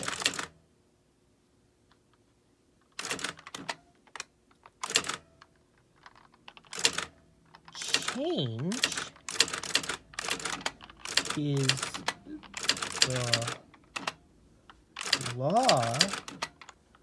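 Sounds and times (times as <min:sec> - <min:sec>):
typewriter strikes: 0:08.8 - 0:14.1, 0:15.0 - 0:16.5.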